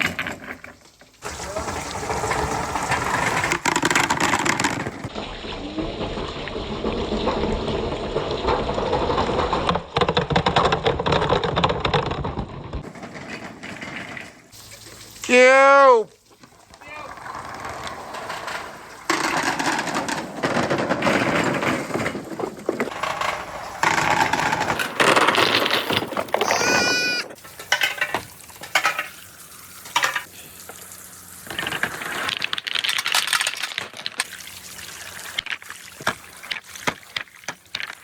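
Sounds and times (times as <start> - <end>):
marbles rolling on track: 16.7 - 28.1
short warbling tone: 26.4 - 27.3.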